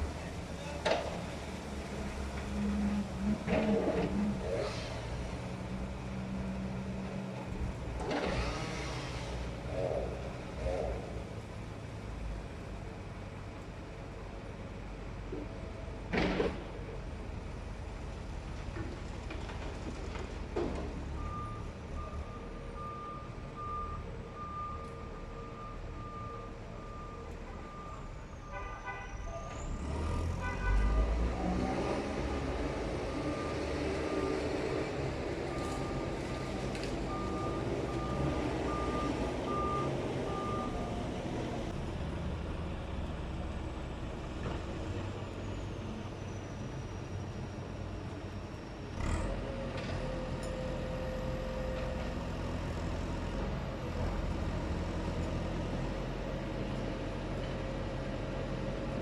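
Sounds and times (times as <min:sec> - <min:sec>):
diesel engine rumbling: 0:00.0 - 0:59.0
vehicle reversing alarm beeping: 0:20.9 - 0:29.6, 0:32.1 - 0:41.8.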